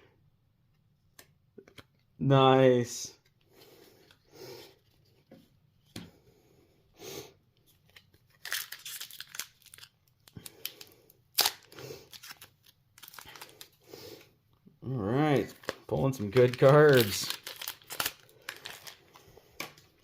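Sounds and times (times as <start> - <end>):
foil wrapper tearing and crinkling: 8.3 - 13.7, 15.4 - 19.2.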